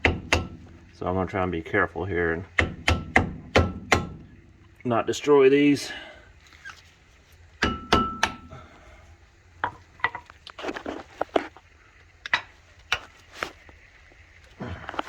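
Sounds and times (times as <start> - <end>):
struck metal ringing: 0.0 - 1.0, 2.6 - 4.7, 7.6 - 8.5.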